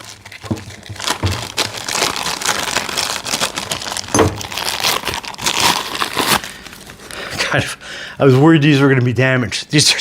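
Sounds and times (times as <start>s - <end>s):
plastic wrapping crinkling: 0.0s - 7.6s.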